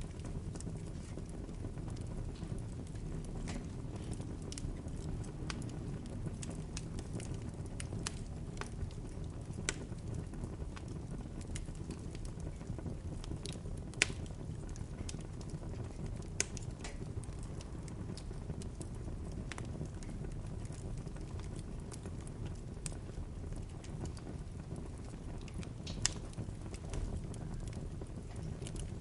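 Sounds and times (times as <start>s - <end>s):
fire crackles and pops: 0.0s - 29.0s
low rumble of flames: 0.0s - 29.0s.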